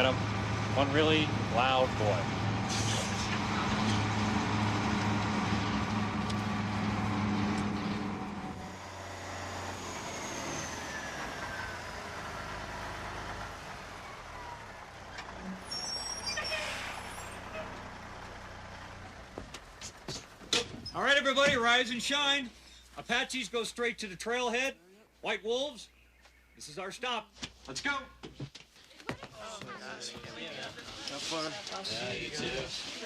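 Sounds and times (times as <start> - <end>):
bus engine running: 0.0 - 21.0
air brakes hissing: 2.6 - 3.4, 15.5 - 17.7.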